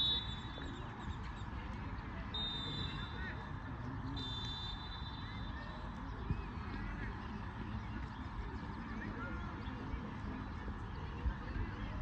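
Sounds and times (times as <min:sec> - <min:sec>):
referee's whistle blasts: 0:00.0 - 0:00.6, 0:02.3 - 0:03.2, 0:04.2 - 0:05.4
faint background chatter: 0:00.0 - 0:12.0.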